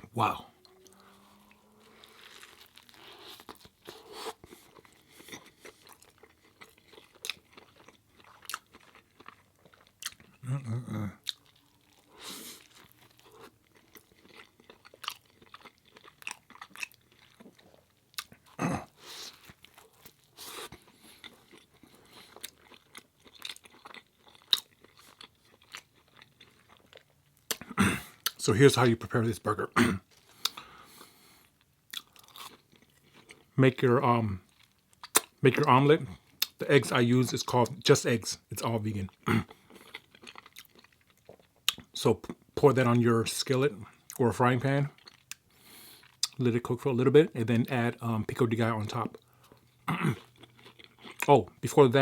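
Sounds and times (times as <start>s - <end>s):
person chewing food: 0.3s - 28.4s, 30.0s - 33.6s, 34.4s - 35.4s, 36.1s - 36.6s, 39.1s - 42.5s, 44.9s - 46.4s, 49.1s - 51.6s.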